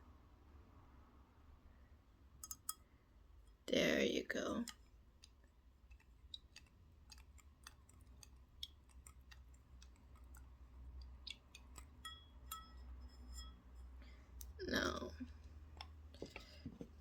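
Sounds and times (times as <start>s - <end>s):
faint small clicks and ticks: 4.6s - 12.6s.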